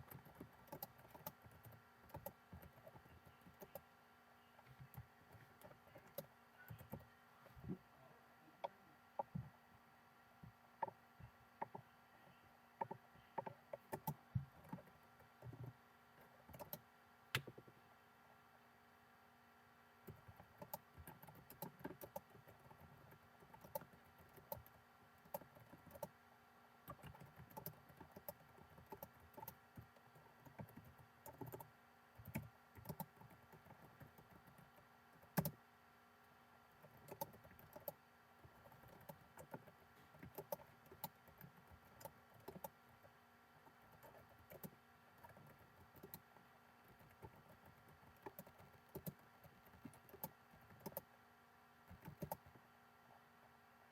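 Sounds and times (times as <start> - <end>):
computer keyboard typing: 0.0 - 3.8, 4.6 - 7.1, 11.6 - 11.8, 12.8 - 16.8, 20.1 - 26.1, 26.8 - 35.6, 36.7 - 51.1, 51.9 - 52.6
faint electrical hum: 0.0 - 53.9.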